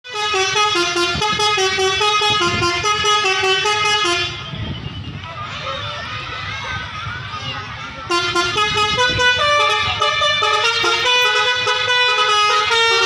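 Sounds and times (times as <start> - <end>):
multi-tone musical bus horn: 0.0 - 4.9, 8.1 - 13.0.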